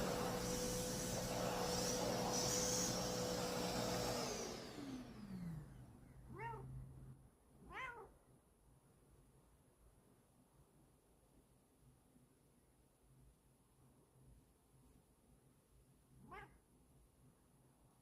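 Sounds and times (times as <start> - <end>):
vacuum cleaner running: 0.0 - 6.0
cat meowing: 6.3 - 6.8, 7.6 - 8.2, 16.2 - 16.6.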